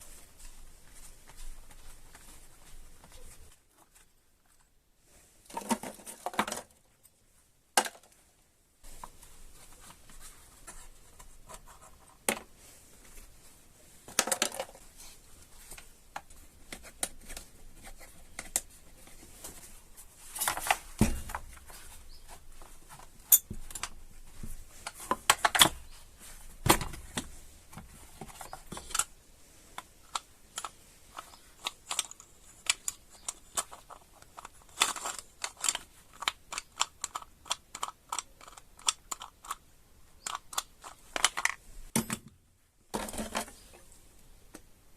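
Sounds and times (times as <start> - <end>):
small hard parts clicking and rattling: 28.1 - 29.2, 29.8 - 42.2.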